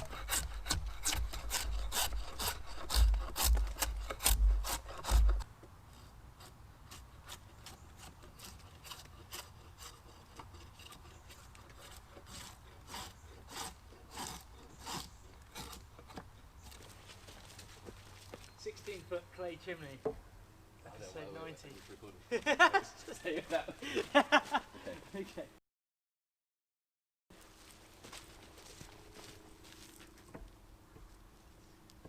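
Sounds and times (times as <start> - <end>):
hand saw cutting wood: 0.0 - 16.4.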